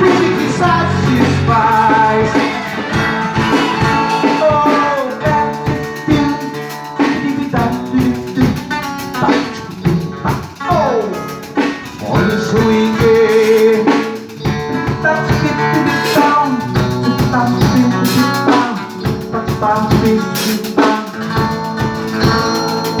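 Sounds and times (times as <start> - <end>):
pitched instruments playing: 0.0 - 6.0
drum kit: 0.0 - 23.0.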